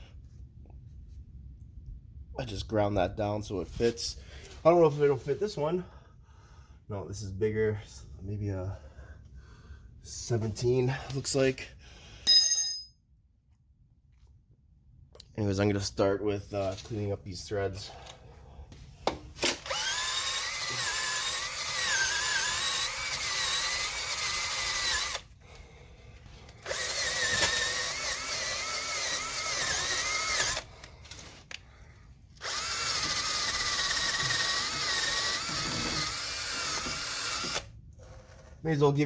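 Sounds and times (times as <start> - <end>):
handheld power tool whining: 19.4 - 25.7, 26.3 - 31.4, 32.3 - 38.4.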